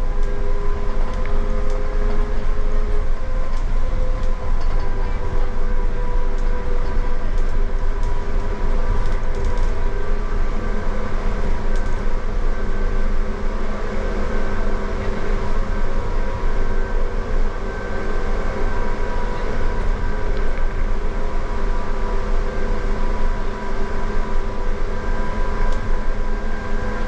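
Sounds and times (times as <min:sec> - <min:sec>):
low rumble of bus: 0:00.0 - 0:27.0.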